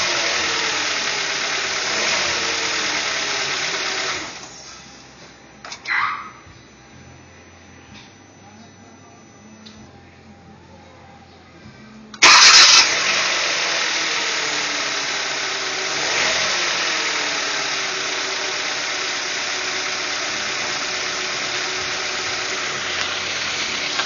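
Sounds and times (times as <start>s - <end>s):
car engine starting and idling: 0.0s - 6.4s, 12.1s - 24.0s.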